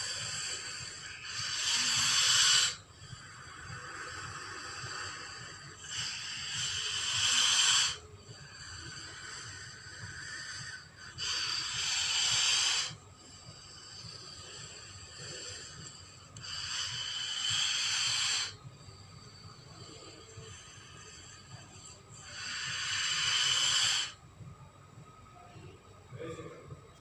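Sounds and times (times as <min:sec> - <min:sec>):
giant snake hissing: 0:00.0 - 0:08.0, 0:08.6 - 0:13.0, 0:16.4 - 0:18.6, 0:22.3 - 0:24.2.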